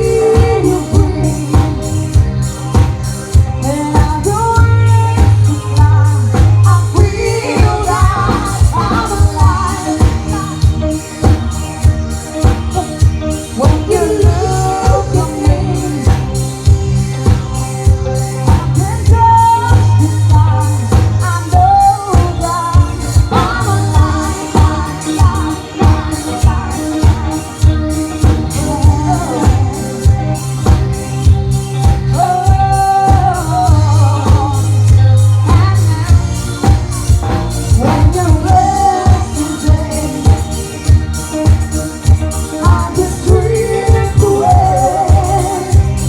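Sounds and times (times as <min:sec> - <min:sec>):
band playing pop song: 0:00.0 - 0:46.0
person singing: 0:00.0 - 0:46.0.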